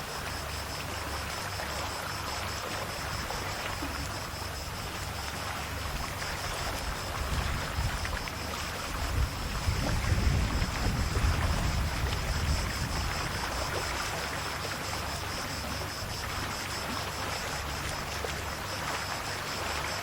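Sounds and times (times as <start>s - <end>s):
sea lapping at the shore: 0.0s - 20.0s
wind rumble on microphone: 5.8s - 14.2s.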